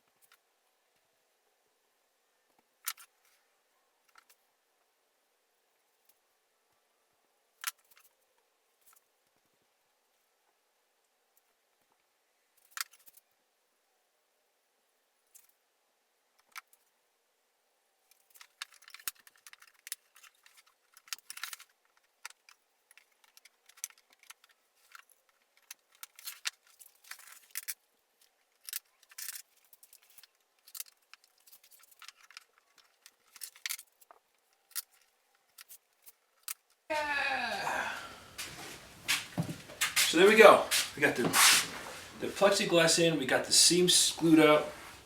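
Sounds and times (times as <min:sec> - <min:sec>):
hard pieces clicking and rattling: 0:18.1 - 0:36.8.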